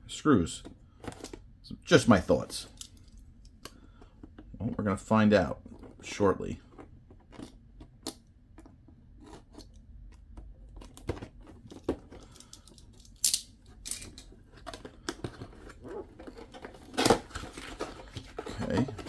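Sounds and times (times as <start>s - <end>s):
packaging rustling and scraping: 0.6s - 8.0s, 8.6s - 19.0s
cardboard packaging clicks and taps: 10.4s - 12.2s.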